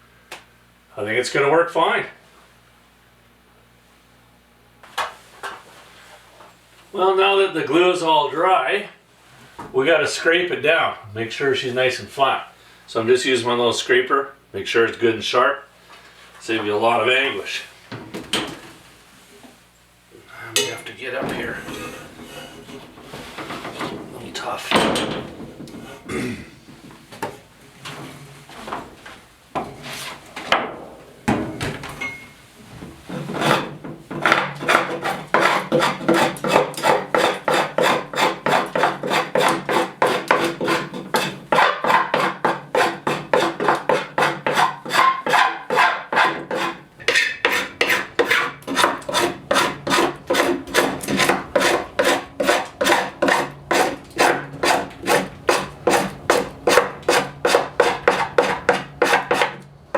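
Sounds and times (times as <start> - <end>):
hand scraper scraping wood: 33.1 - 59.6.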